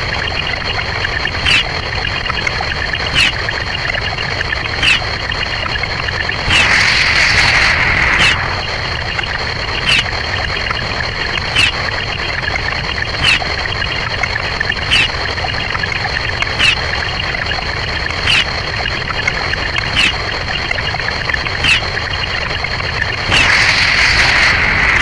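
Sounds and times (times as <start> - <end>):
steady hissing noise: 6.2 - 10.9, 22.4 - 25.0.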